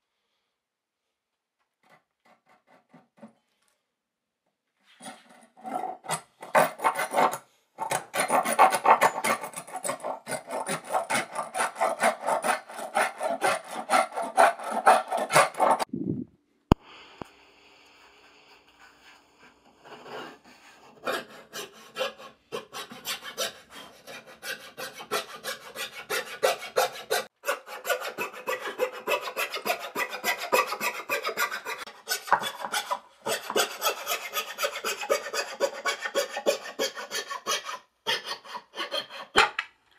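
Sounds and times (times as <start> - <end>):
wood being sanded by hand: 8.2 - 15.9, 21.0 - 39.4.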